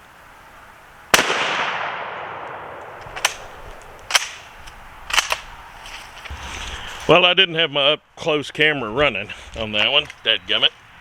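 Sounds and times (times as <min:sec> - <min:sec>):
rifle shot echoing: 0:01.1 - 0:05.5
small sharp clicks: 0:02.5 - 0:05.5.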